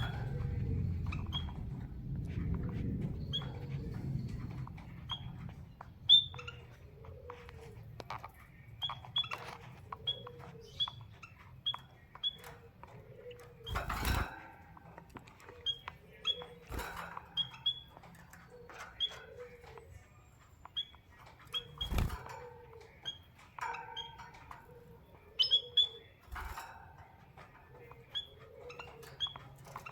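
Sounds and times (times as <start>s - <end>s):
cage birds chirping: 0.0s - 29.9s.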